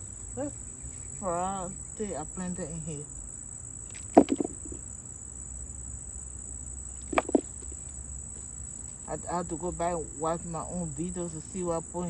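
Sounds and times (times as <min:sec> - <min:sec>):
insects trilling: 0:00.0 - 0:12.0
quick knocks: 0:03.9 - 0:04.8, 0:07.0 - 0:07.8.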